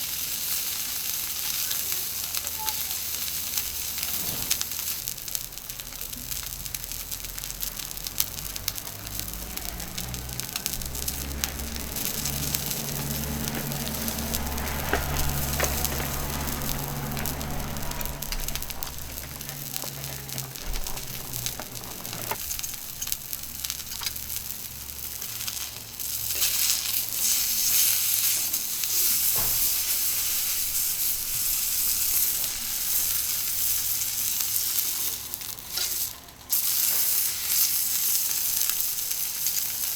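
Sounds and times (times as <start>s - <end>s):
steak sizzling on a griddle: 0.0s - 39.9s
low rumble: 6.4s - 25.1s.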